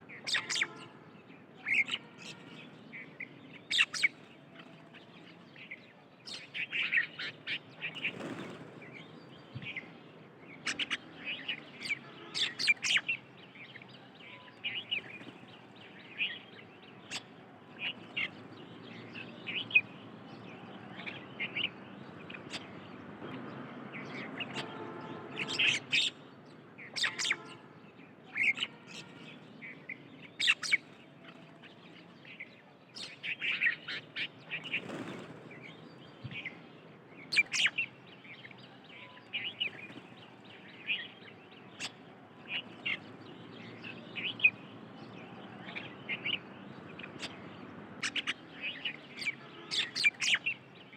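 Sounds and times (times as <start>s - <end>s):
small birds chirping: 0.0s - 50.9s
buzzy bird call: 0.2s - 0.8s, 25.4s - 26.1s, 26.9s - 27.6s, 48.0s - 50.5s.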